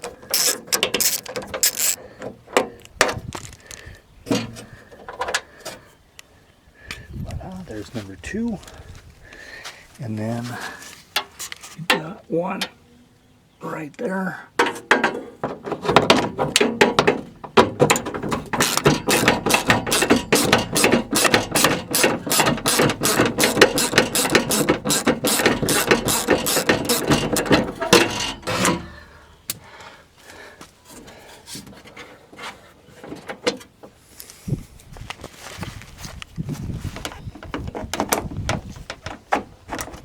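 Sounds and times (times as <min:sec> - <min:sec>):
hand ratchet clicking: 0:00.3 - 0:02.0, 0:18.5 - 0:28.2.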